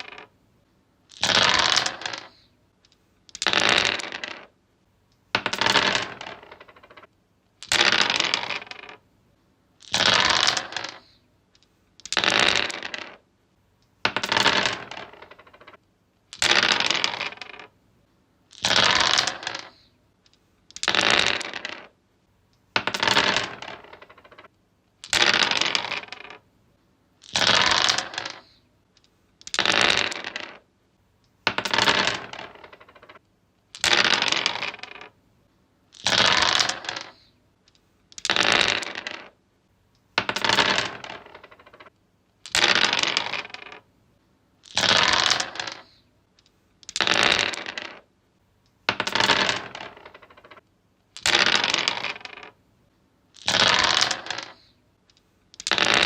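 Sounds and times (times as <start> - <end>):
dice rattling on wood: 0.0 - 0.3, 1.1 - 4.5, 5.3 - 9.0, 9.8 - 13.2, 14.0 - 17.8, 18.5 - 22.0, 22.7 - 26.4, 27.2 - 30.7, 31.4 - 35.2, 35.9 - 39.4, 40.0 - 43.9, 44.6 - 48.1, 48.8 - 52.6, 53.3 - 56.0.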